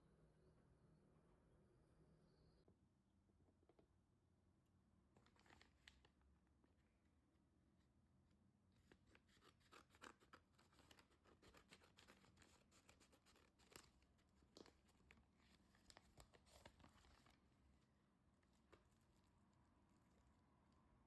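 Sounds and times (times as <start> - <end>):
packaging rustling and crinkling: 5.2 - 6.1, 8.9 - 17.5.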